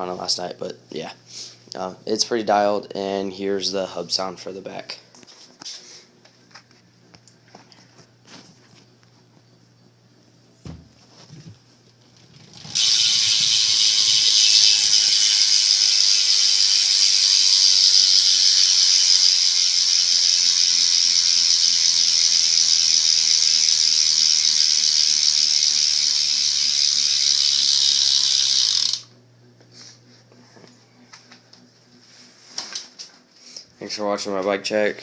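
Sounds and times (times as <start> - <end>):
bicycle hub freewheel ratchet buzzing: 12.1 - 29.2.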